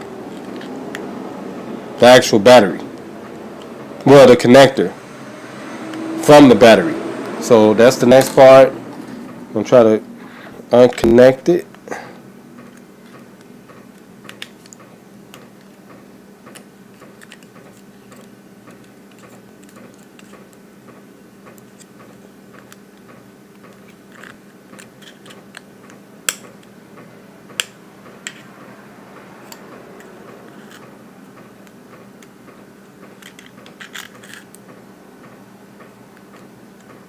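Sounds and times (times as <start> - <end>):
faint steady hum: 0.0 - 37.0
small tool clicks and scraping: 29.4 - 30.9, 33.1 - 34.6.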